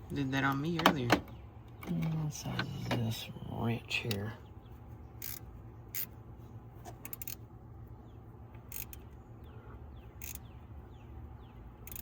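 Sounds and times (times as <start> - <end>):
steady low hum: 0.0 - 12.0
wrench metallic clicks: 8.7 - 9.0, 10.2 - 10.4.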